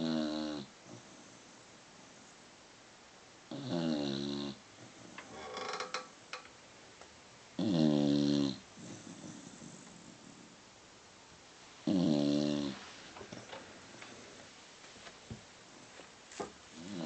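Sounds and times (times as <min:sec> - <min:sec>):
dog snoring: 0:00.0 - 0:01.3, 0:03.5 - 0:05.2, 0:07.6 - 0:10.6, 0:11.8 - 0:12.9, 0:16.8 - 0:17.0
crackly breath: 0:08.7 - 0:10.6.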